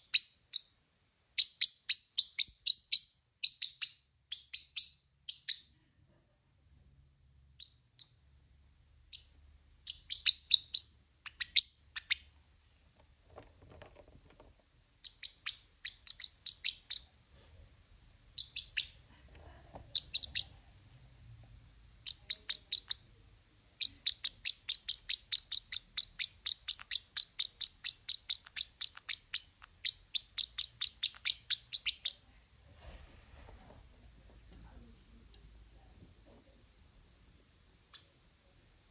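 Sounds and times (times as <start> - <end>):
parrot chirping: 0.0 - 0.8, 1.4 - 5.8, 7.6 - 8.2, 9.1 - 12.3, 15.0 - 17.1, 18.3 - 19.1, 19.9 - 20.6, 22.0 - 23.1, 23.8 - 32.2.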